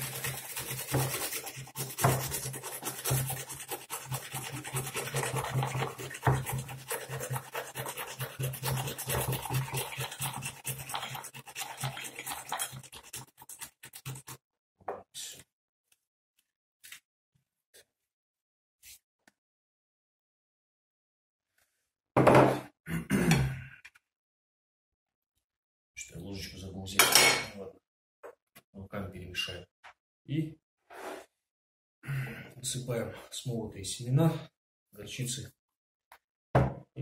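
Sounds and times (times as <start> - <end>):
onion scraping on grater: 0.0 - 14.4.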